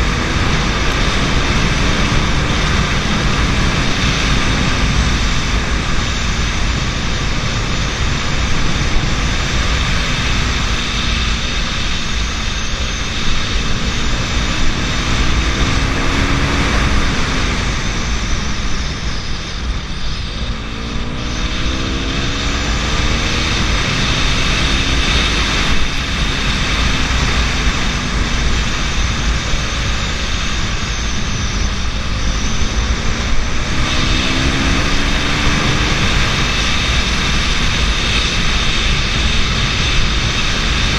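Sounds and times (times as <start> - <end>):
motorcycle engine revving: 0.0 - 40.9
wind noise: 0.0 - 40.9.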